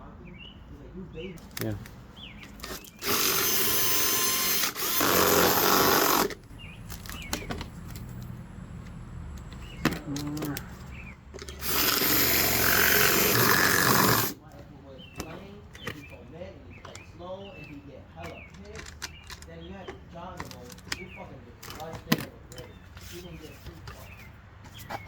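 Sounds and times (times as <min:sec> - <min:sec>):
power drill running: 0:02.6 - 0:07.5, 0:11.6 - 0:14.4.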